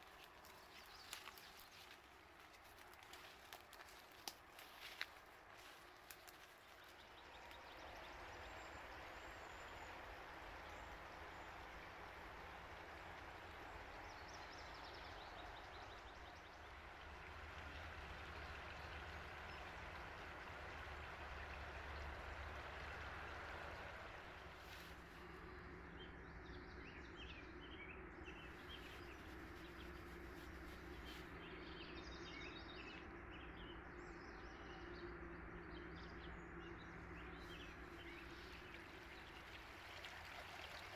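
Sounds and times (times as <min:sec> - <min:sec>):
small birds chirping: 0:00.0 - 0:22.3, 0:26.0 - 0:40.8
faint low hum: 0:00.0 - 0:40.9
river water flowing: 0:37.6 - 0:40.9.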